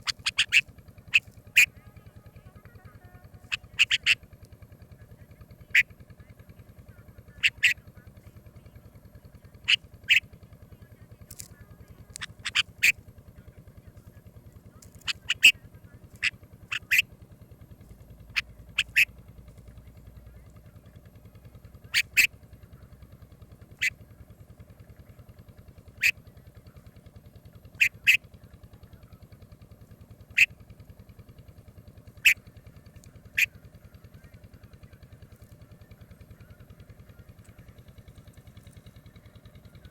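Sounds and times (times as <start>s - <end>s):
bulbul call notes: 0.0s - 4.2s, 11.0s - 12.9s, 13.6s - 17.0s
steady low hum: 0.0s - 39.9s.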